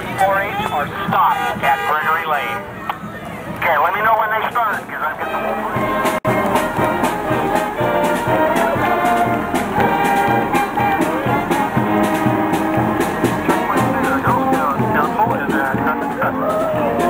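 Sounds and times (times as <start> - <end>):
trumpets and trombones playing: 0.3 - 2.8, 3.6 - 17.0
steady drum beat: 4.4 - 17.0.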